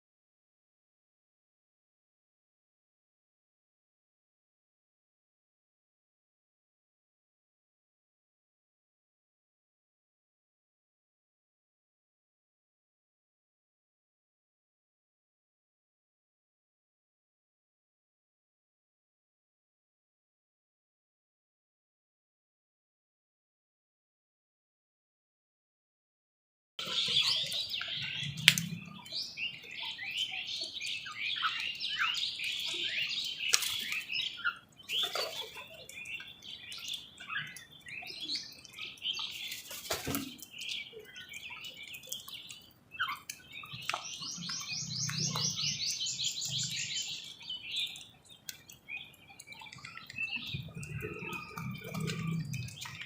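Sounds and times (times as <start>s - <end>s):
many birds chirping: 26.8s - 53.0s.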